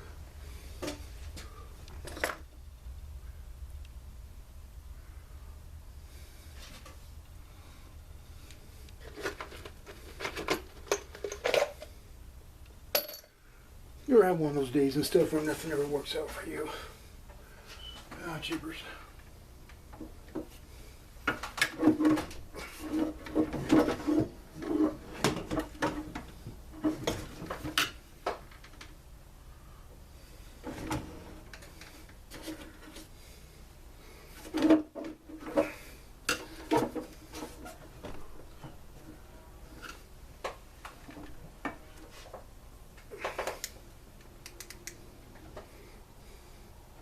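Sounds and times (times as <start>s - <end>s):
tools and parts clattering: 9.0s - 11.9s, 13.0s - 13.4s.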